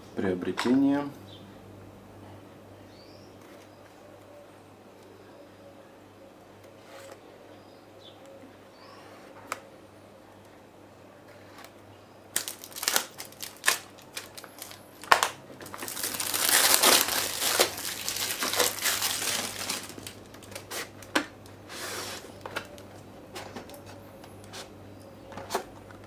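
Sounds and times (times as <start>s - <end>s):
plastic wrap crinkling: 12.3s - 24.7s
packaging clicks and snaps: 12.4s - 21.6s, 22.2s - 26.0s.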